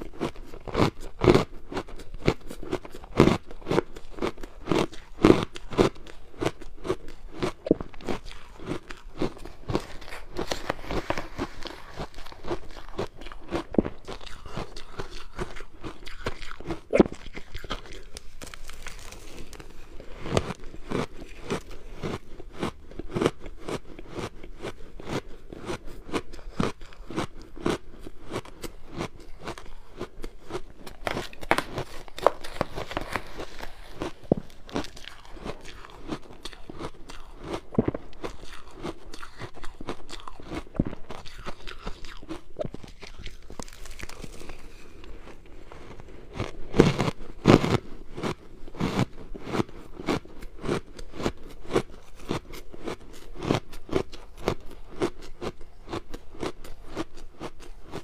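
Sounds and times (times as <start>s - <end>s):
chewing crunchy ice: 0.0s - 58.0s.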